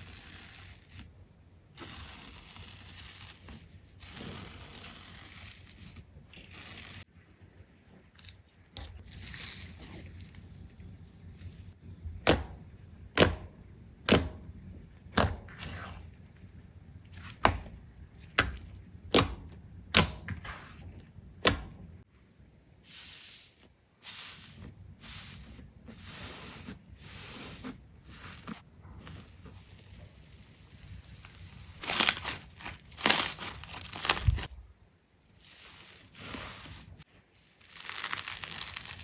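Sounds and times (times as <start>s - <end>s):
slime crackling squishes: 37.4s - 39.0s.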